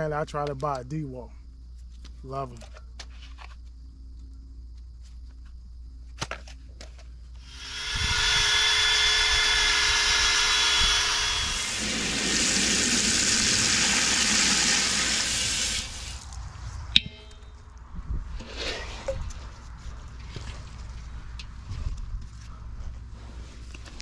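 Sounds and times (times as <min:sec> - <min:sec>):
power tool scouring rust off pot: 0:07.4 - 0:16.2.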